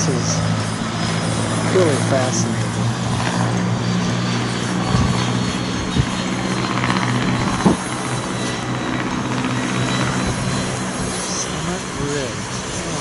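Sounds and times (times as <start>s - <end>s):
low droning hum: 0.0s - 13.0s
wind buffeting microphone: 0.4s - 13.0s.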